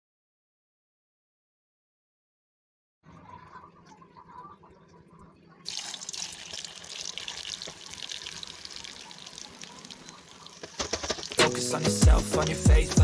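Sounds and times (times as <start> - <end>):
tap water running into sink: 5.6 - 13.0.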